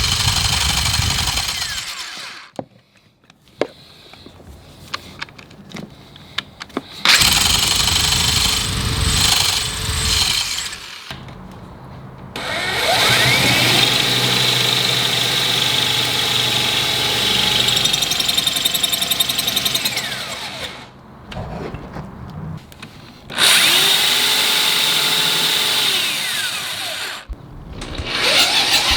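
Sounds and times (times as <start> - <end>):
electric drill boring into steel: 0.0 - 2.5, 7.1 - 11.2, 12.4 - 20.9, 23.3 - 28.9.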